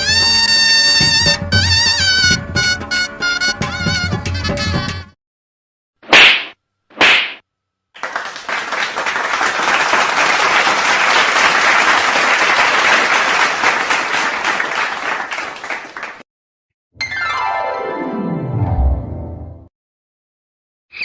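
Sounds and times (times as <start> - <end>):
crowd applauding: 8.0 - 16.2.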